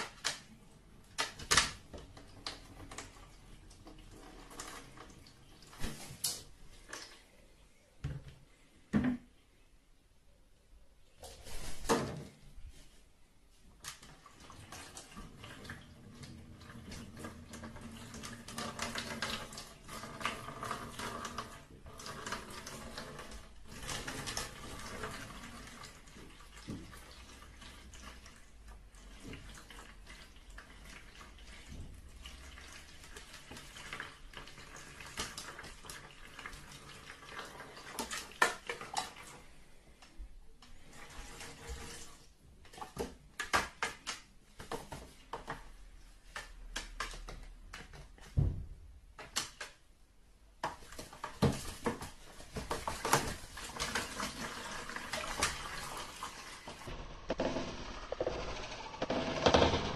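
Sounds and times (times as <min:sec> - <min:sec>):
water running and splashing: 0:50.9 - 0:57.0.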